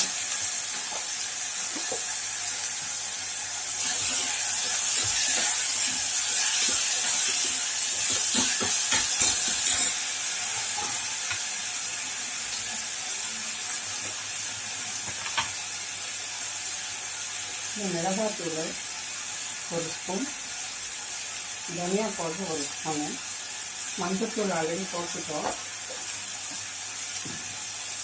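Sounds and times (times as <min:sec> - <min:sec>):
food sizzling in hot oil: 0:00.0 - 0:28.0
spoon scraping and stirring pot: 0:03.8 - 0:11.4.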